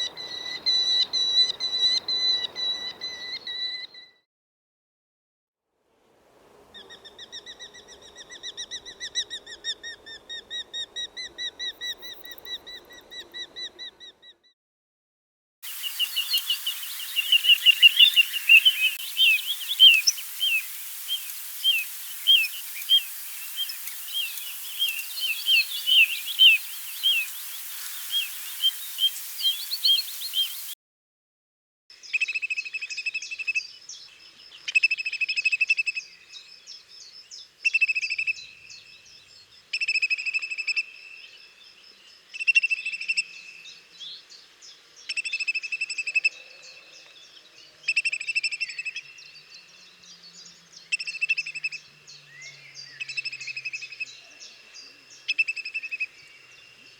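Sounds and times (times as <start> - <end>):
background hiss: 15.6 - 30.8
bird chirping: 15.6 - 30.8.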